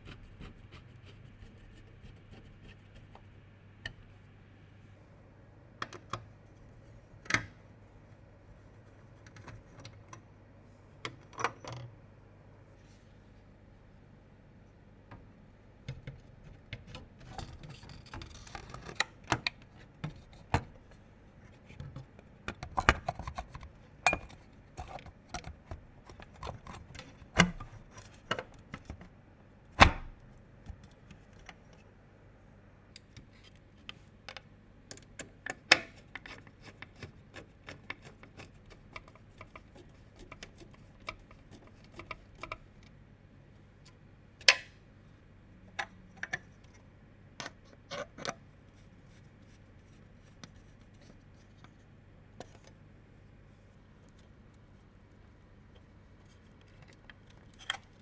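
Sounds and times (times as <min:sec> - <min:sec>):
computer parts handled by hand: 0:15.9 - 0:29.2, 0:33.0 - 0:43.0.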